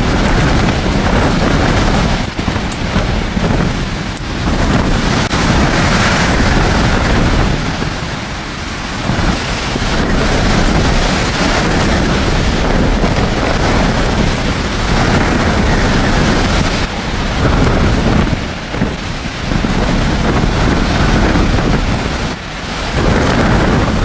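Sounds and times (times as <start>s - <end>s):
strong wind on microphone: 0.0s - 24.0s.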